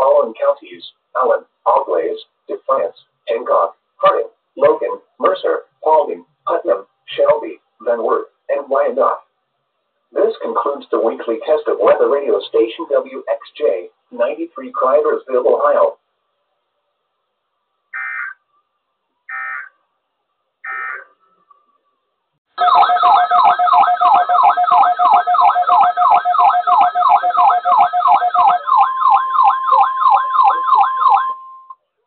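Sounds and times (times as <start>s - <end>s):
electronic alarm warbling: 17.9s - 18.5s, 19.3s - 19.8s, 20.6s - 21.2s, 22.6s - 31.8s
steady warning alarm tone: 18.0s - 18.4s, 19.3s - 19.8s, 20.6s - 21.2s, 22.6s - 31.8s.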